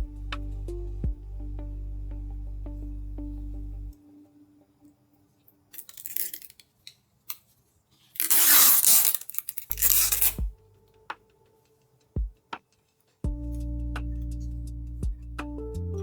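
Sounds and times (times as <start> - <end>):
background music: 0.0 - 5.4, 9.7 - 16.0
packaging crinkling and tearing: 5.8 - 6.7, 8.0 - 10.4.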